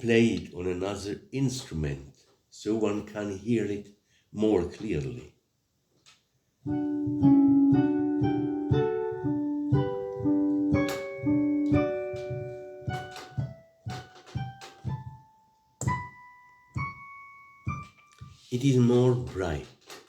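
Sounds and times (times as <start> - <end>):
piano keyboard melody: 6.7 - 19.3.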